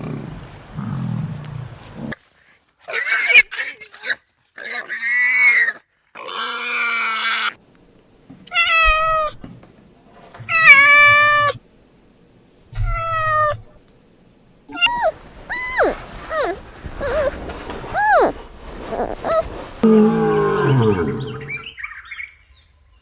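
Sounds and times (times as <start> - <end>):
harsh animal cry: 2.9 - 7.6, 10.4 - 11.6, 12.8 - 13.7, 14.7 - 21.7
drawn-out falling animal cries: 10.4 - 11.6, 12.8 - 13.7, 14.7 - 21.7
short high animal calls: 14.7 - 17.4, 18.0 - 21.7.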